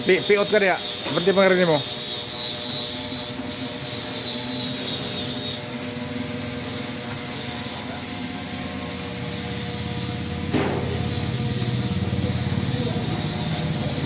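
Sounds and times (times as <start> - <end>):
machine humming: 0.0 - 14.0
high whine: 8.6 - 14.0.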